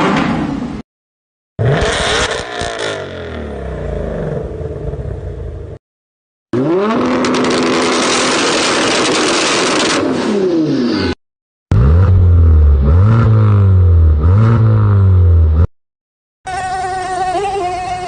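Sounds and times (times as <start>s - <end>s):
car engine revving: 1.6s - 5.2s, 6.6s - 15.7s.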